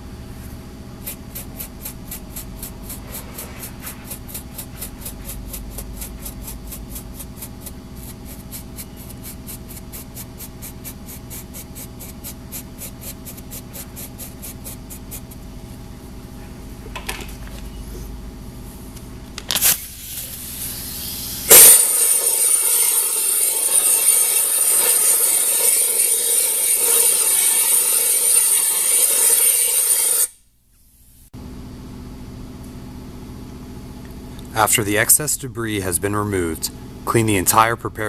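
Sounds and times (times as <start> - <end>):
steady low hum: 0.0 - 28.2, 30.8 - 38.0
wire brush scrubbing: 1.0 - 15.5, 21.5 - 30.3
sharp clatter: 21.4 - 30.4.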